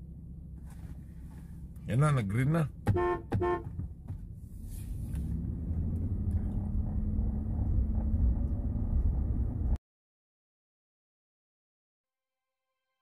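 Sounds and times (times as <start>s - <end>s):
car engine and tyres rumbling: 0.0s - 9.8s.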